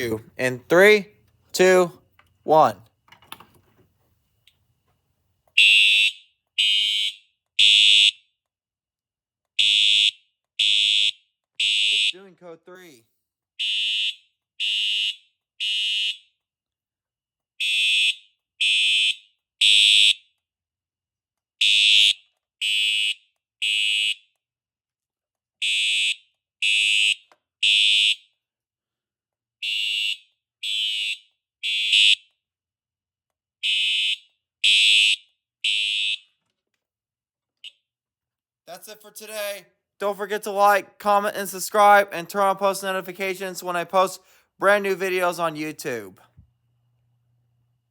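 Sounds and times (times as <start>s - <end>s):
fire alarm horn blasts: 5.6s - 8.3s, 9.6s - 12.4s, 13.6s - 16.3s, 17.6s - 20.2s, 21.6s - 24.3s, 25.6s - 28.3s, 29.6s - 32.3s, 33.6s - 36.2s.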